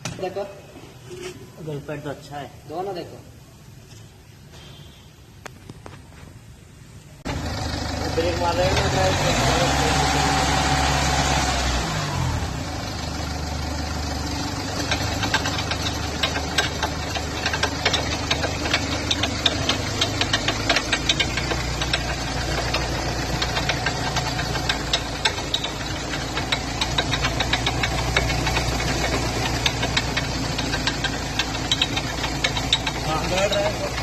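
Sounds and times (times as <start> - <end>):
car engine running: 7.2 - 34.0
rapid irregular clicking: 12.6 - 34.0.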